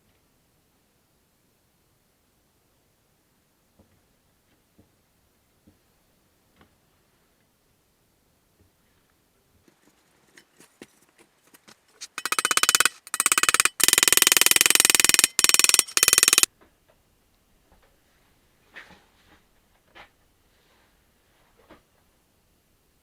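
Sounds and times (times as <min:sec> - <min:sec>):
handling clicks and knocks: 0:09.7 - 0:16.5
rapid rattling buzz: 0:12.1 - 0:16.5.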